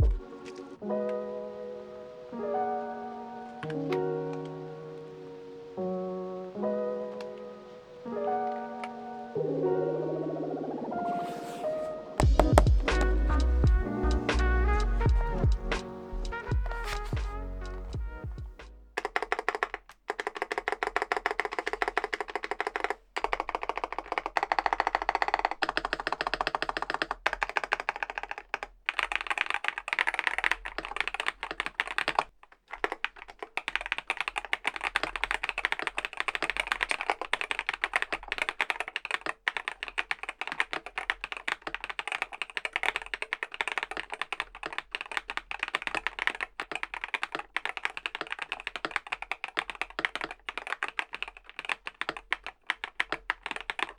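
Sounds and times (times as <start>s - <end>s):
mechanical keyboard key clacks: 19.0s - 53.9s.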